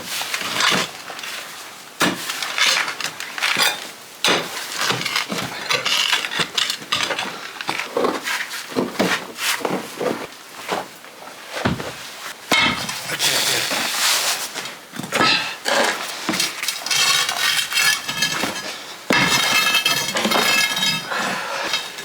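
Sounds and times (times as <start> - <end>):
metal tools scraping stone: 2.4 - 7.9, 12.5 - 14.0, 15.1 - 22.0.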